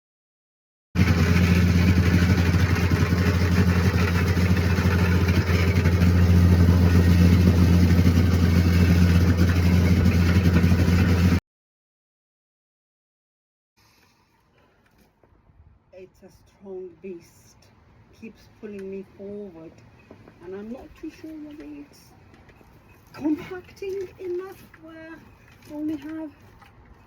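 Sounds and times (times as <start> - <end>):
plate compactor running: 1.0 - 11.4.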